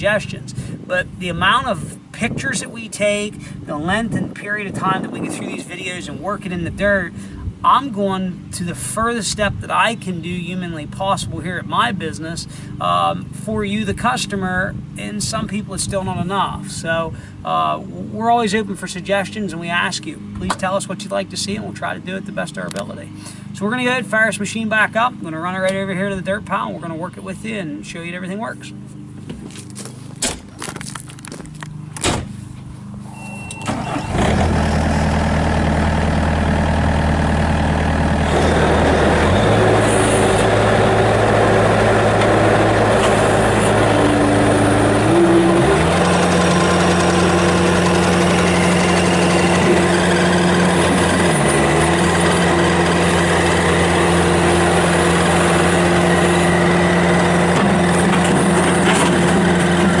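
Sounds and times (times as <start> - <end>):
diesel engine idling and revving: 0.0 - 60.0
short beep: 33.1 - 34.2.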